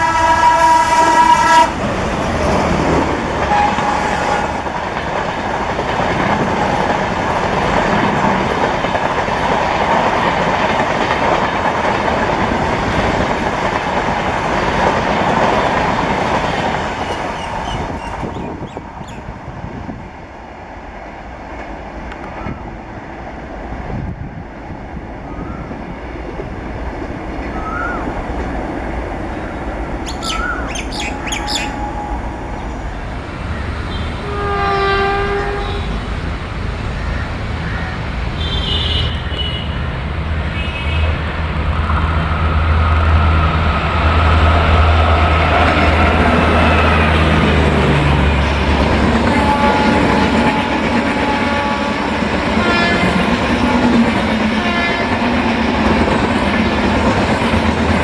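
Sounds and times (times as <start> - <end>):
train horn blast: 0.0 - 1.8, 3.4 - 4.7, 33.9 - 36.1, 38.4 - 39.8, 49.1 - 53.9, 54.5 - 55.3
diesel locomotive engine drone: 0.0 - 58.0.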